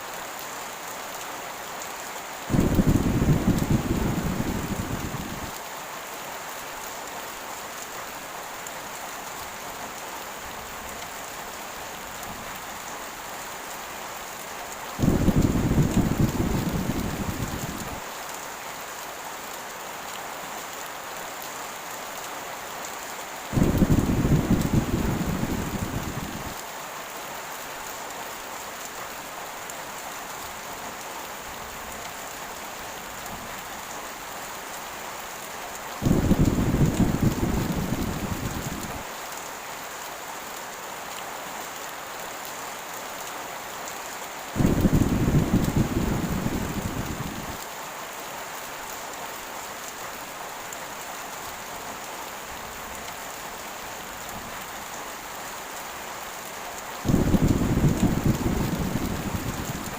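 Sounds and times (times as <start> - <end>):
heavy rain hissing: 0.0 - 20.1, 20.9 - 40.6, 43.4 - 51.9, 52.5 - 59.9
thunder rumbling: 2.5 - 5.5, 15.0 - 18.0, 23.6 - 26.6, 36.0 - 39.0, 44.6 - 47.6, 57.1 - 59.9.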